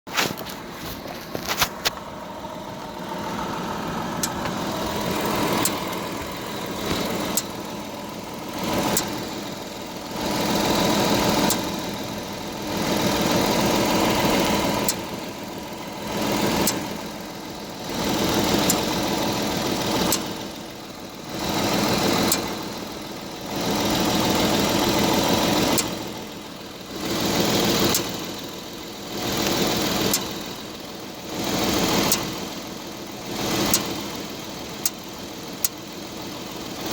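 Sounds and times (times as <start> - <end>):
car engine running: 0.1 - 36.9.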